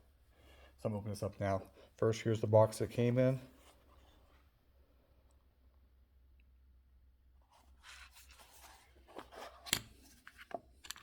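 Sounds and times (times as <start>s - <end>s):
paper rustling and crinkling: 7.5s - 10.5s.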